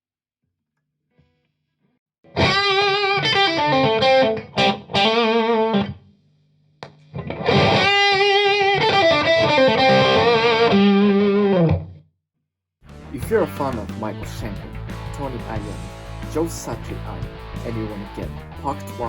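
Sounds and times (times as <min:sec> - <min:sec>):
electric guitar lead with vibrato: 0:02.3 - 0:05.9, 0:07.2 - 0:11.8.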